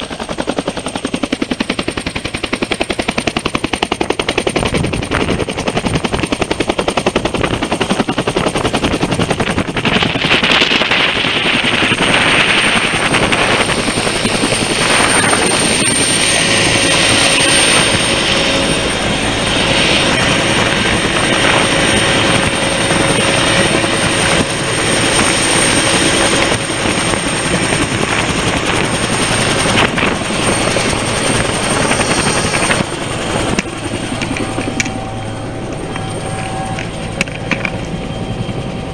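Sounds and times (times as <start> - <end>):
helicopter running close by: 0.0 - 38.9.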